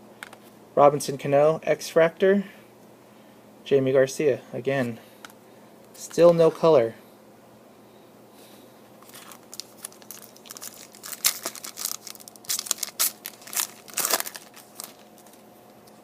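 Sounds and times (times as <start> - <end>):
foil wrapper crinkling and tearing: 9.0 - 16.0.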